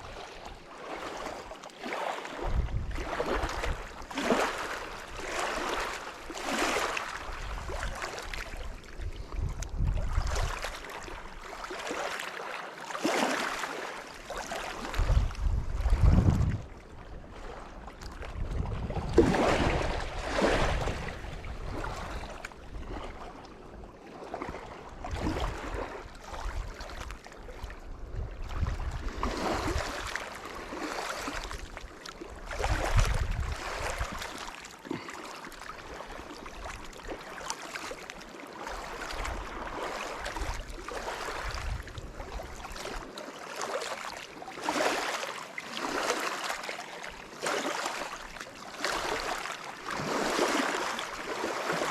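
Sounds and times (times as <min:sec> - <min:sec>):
small waves lapping: 0:00.0 - 0:51.9
wind buffeting microphone: 0:02.4 - 0:04.0, 0:08.6 - 0:11.2, 0:14.9 - 0:17.5, 0:18.1 - 0:23.0, 0:27.8 - 0:30.1, 0:32.3 - 0:34.2, 0:40.3 - 0:42.7.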